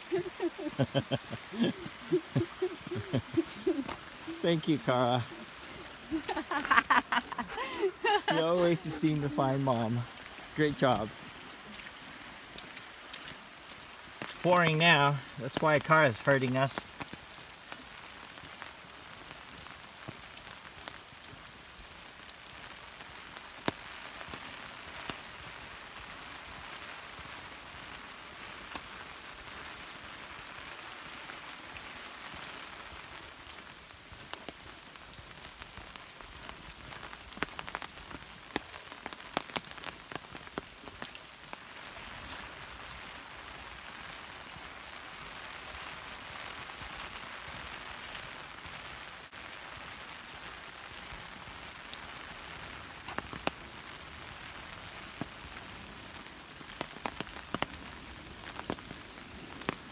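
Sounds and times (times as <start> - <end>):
heavy rain pouring: 0.0 - 59.9
sharp taps of raindrops: 0.1 - 25.5, 28.6 - 29.2, 33.4 - 44.7, 53.0 - 53.8, 54.8 - 59.9.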